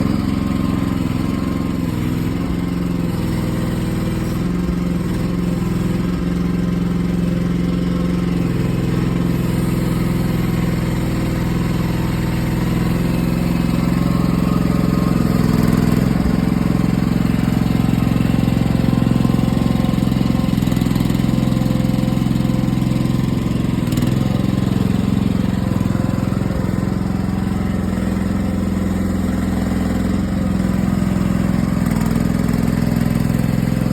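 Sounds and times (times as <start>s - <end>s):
excavator engine running: 0.0s - 33.9s.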